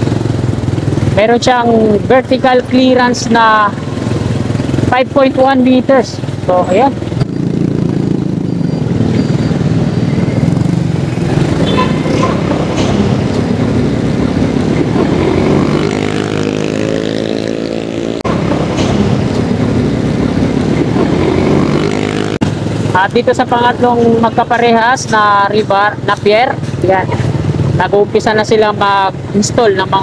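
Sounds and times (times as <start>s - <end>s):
road traffic: 0.0s - 30.0s
vehicle engine running: 0.0s - 30.0s
engine revving up: 6.4s - 22.6s.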